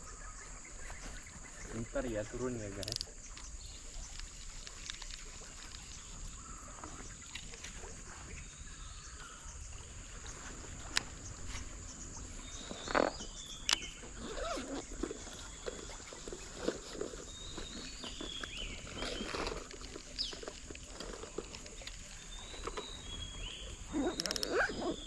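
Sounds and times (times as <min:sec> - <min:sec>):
high insect drone: 0:00.0 - 0:25.0
whistled bird calls: 0:22.2 - 0:25.0.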